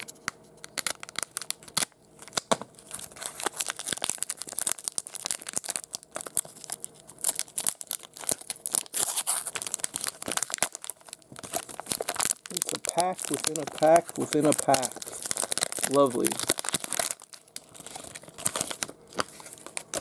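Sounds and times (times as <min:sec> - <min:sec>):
wrapper tearing and crinkling: 0:00.0 - 0:20.0.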